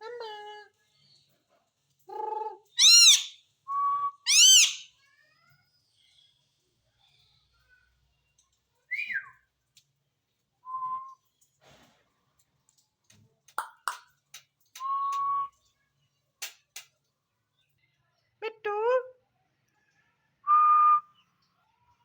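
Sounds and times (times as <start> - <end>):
parrot whistling: 2.8 - 3.4, 4.2 - 4.9.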